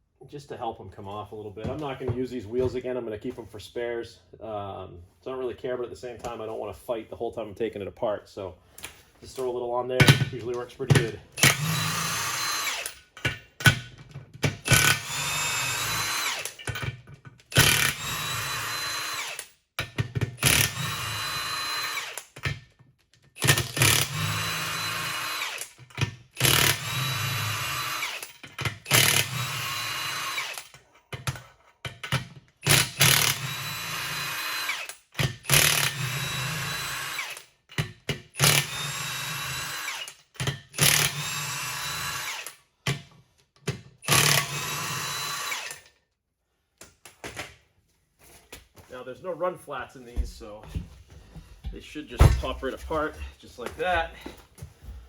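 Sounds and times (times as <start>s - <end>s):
cordless impact gun spinning: 11.4s - 13.0s, 14.6s - 16.7s, 17.5s - 19.5s, 20.4s - 22.3s, 23.4s - 25.8s, 26.4s - 30.7s, 32.6s - 37.5s, 44.0s - 45.9s.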